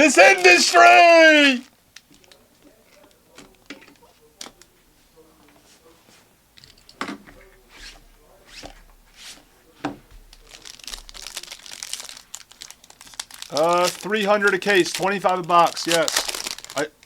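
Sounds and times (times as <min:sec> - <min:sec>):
plastic packaging tearing: 0:10.3 - 0:16.9.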